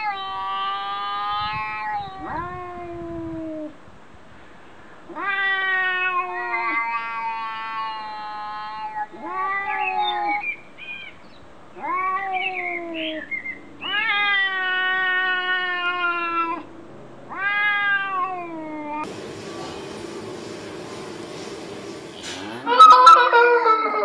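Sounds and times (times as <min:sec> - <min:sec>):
cat meowing: 0:00.0 - 0:03.7, 0:05.1 - 0:10.5, 0:11.8 - 0:13.2, 0:13.8 - 0:16.7, 0:17.3 - 0:19.1, 0:22.6 - 0:24.0
steady hiss: 0:19.0 - 0:22.6.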